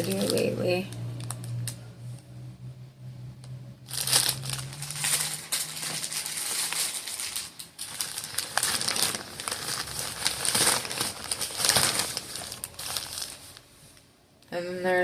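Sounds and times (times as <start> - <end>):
plastic packaging crinkling: 0.0 - 1.8, 3.9 - 14.0.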